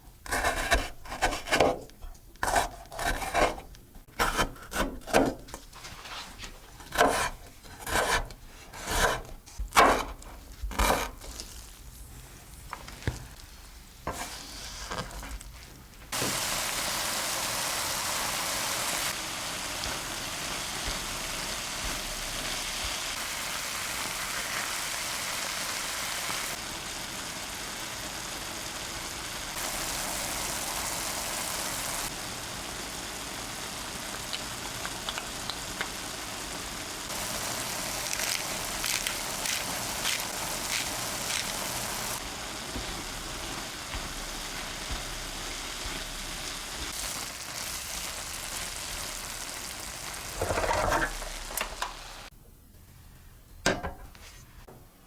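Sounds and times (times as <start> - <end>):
food sizzling in a frying pan: 16.1 - 52.3
oil popping and crackling: 29.5 - 52.3.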